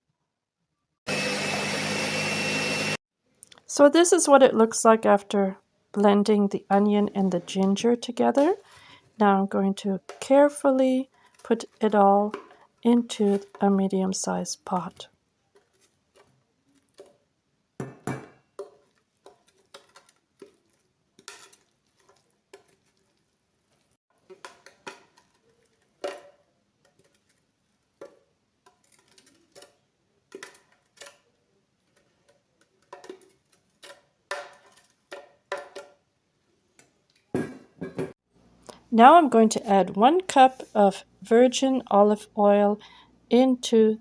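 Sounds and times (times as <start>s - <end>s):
utensil knocking against pot: 17.8s - 18.7s.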